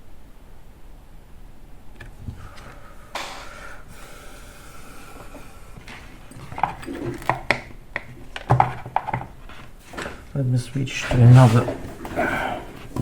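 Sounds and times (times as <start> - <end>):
breath through the nose: 2.3 - 6.3
handling clicks and knocks: 5.8 - 13.0.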